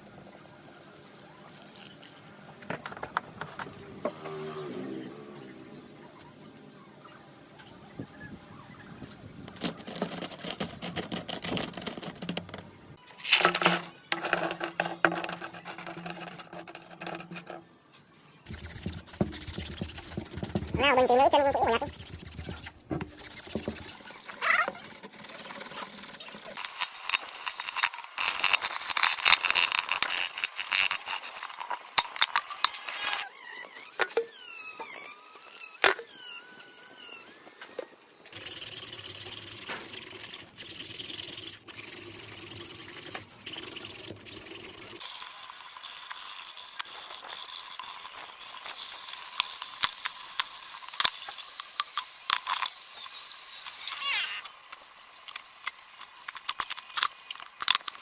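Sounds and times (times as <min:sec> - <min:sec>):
wavering squeals: 0:52.9 - 0:58.0.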